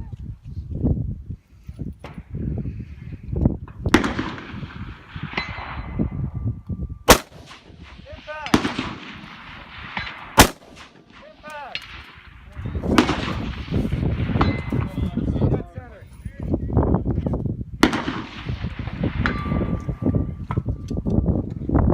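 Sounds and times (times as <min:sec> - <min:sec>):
rifle shots: 0:03.9 - 0:06.0, 0:07.1 - 0:14.7, 0:17.8 - 0:19.6.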